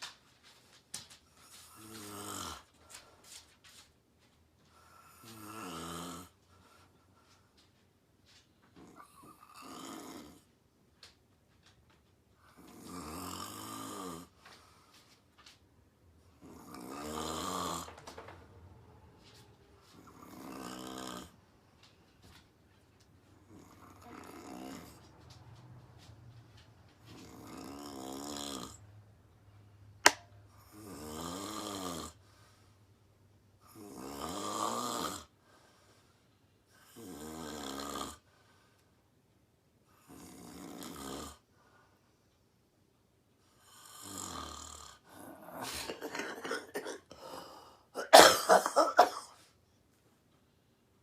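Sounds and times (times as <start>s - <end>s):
woman snoring: 1.7s - 2.7s, 5.0s - 6.4s, 8.9s - 10.4s, 12.6s - 14.3s, 16.4s - 18.0s, 20.0s - 21.4s, 23.4s - 25.0s, 27.2s - 28.8s, 30.6s - 32.2s, 33.7s - 35.3s, 36.9s - 38.2s, 40.0s - 41.4s, 43.6s - 47.7s
quiet breathing: 4.6s - 8.4s, 14.0s - 15.4s, 32.1s - 33.8s, 35.2s - 37.1s, 38.2s - 39.1s, 41.4s - 42.6s, 47.1s - 48.0s.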